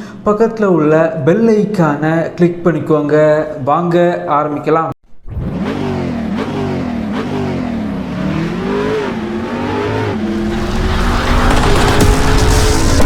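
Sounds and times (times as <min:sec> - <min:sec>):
engine revving: 0:05.2 - 0:13.0.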